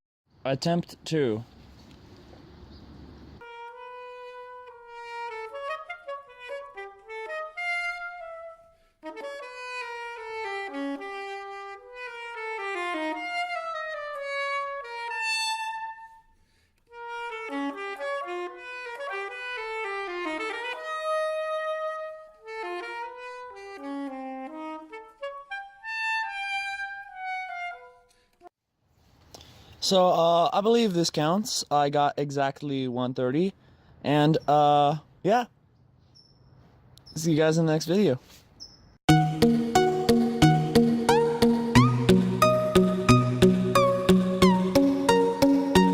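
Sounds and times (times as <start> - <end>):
solo saxophone-like melody: 3.4 - 28.5, 39.1 - 45.9.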